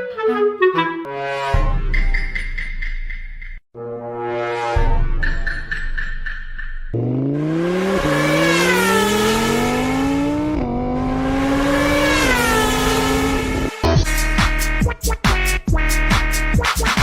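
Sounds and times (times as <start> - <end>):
engine revving: 6.9 - 14.0.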